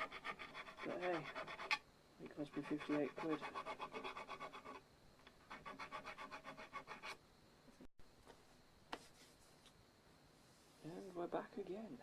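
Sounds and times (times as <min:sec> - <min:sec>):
file rubbing on fret ends: 0:00.0 - 0:01.8, 0:02.4 - 0:04.8.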